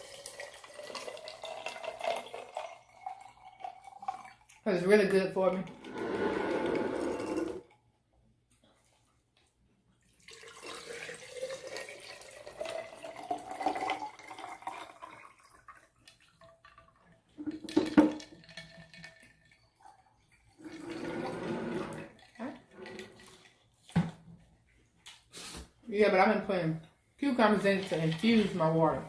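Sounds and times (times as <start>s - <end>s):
water pouring into a glass: 0.0s - 4.9s, 5.5s - 7.7s, 10.0s - 23.8s.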